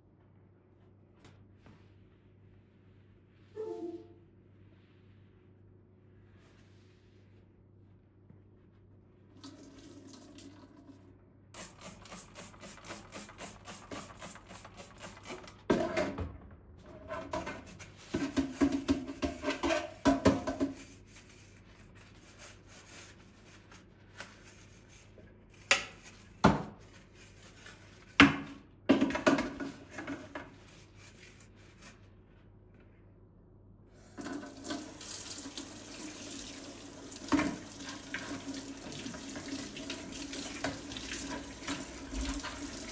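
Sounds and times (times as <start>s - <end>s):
tap running into sink: 34.2s - 42.9s.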